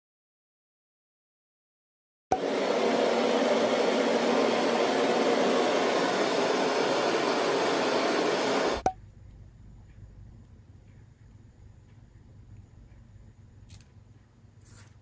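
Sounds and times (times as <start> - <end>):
hot-air blower rushing: 2.3 - 8.9.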